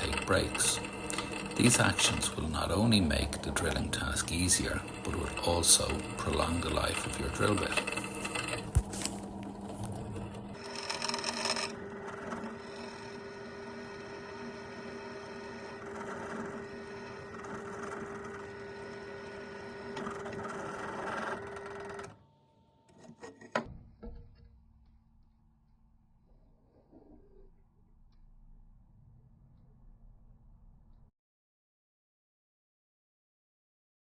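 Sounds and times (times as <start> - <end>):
electric drill drilling steel: 0.0 - 9.4, 10.5 - 21.7.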